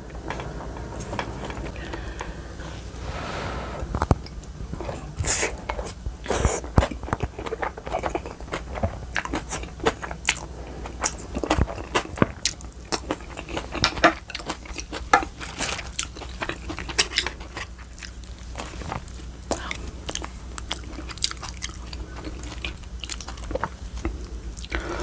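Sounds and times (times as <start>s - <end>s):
chewing and biting: 5.0s - 24.8s.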